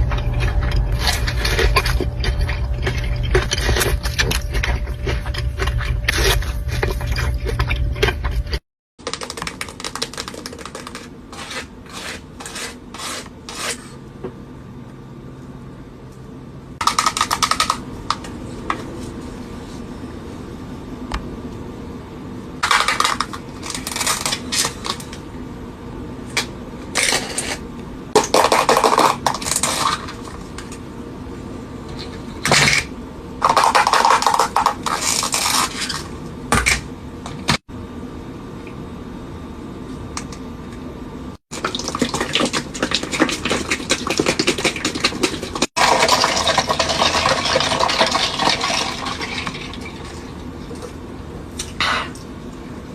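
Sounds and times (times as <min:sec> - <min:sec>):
chewing and crunching: 0:00.0 - 0:08.6.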